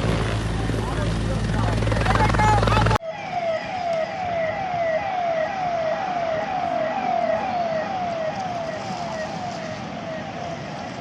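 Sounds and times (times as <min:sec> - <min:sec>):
steady background noise: 0:00.0 - 0:11.0
electronic vehicle siren: 0:02.6 - 0:11.0.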